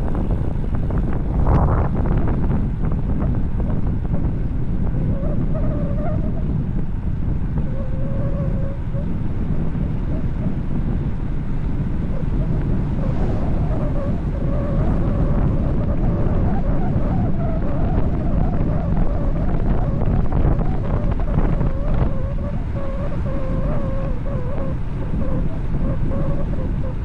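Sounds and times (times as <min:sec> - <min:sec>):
wind buffeting microphone: 0:00.0 - 0:27.0
faint wavering whistle: 0:05.0 - 0:06.7, 0:07.5 - 0:10.8, 0:12.0 - 0:27.0.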